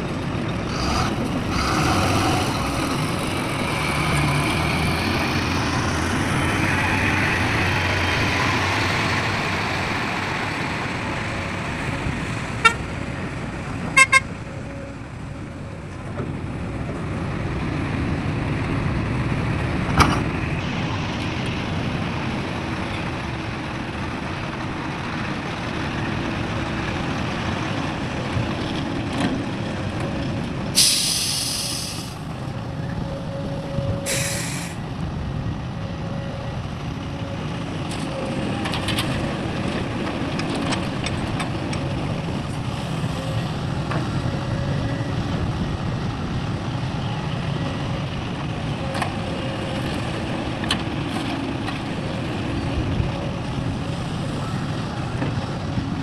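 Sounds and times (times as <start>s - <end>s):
truck diesel engines running: 0.0s - 56.0s
short horn toots: 12.6s - 12.9s, 13.9s - 14.3s
air brake hiss: 30.8s - 32.2s, 34.0s - 34.8s.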